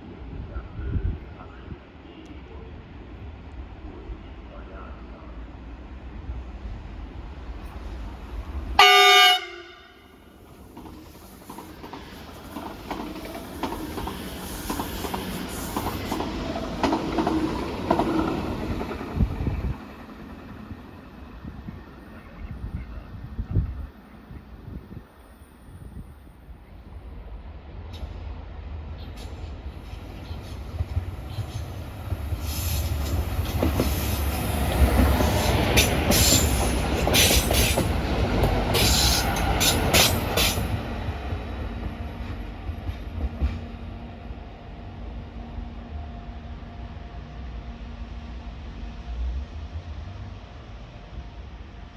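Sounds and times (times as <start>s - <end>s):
train rumbling past: 0.0s - 51.9s
train wheels clicking over rail joints: 10.4s - 19.8s, 29.2s - 43.7s.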